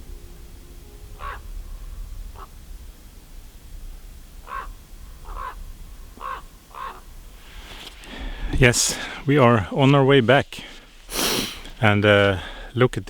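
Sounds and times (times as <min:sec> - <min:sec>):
low steady rumble: 0:00.0 - 0:12.8
crow cawing: 0:01.2 - 0:01.5, 0:02.3 - 0:02.6, 0:04.4 - 0:07.2.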